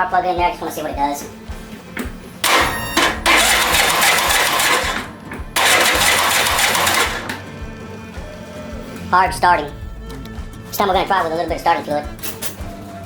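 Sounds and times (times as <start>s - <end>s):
starter cranking mower engine: 2.0s - 7.5s.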